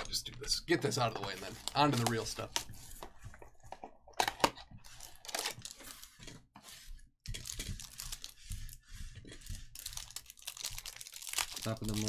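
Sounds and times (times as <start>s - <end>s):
plastic wrap crinkling and tearing: 1.3s - 2.7s, 4.9s - 6.0s, 7.3s - 8.4s, 9.6s - 12.0s
cardboard crunching: 9.4s - 12.0s.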